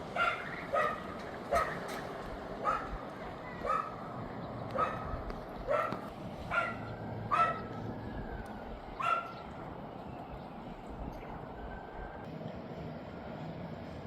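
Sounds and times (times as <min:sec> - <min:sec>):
dog barking: 0:00.2 - 0:01.8, 0:02.6 - 0:03.0, 0:03.6 - 0:04.1, 0:04.7 - 0:07.7, 0:09.0 - 0:09.4.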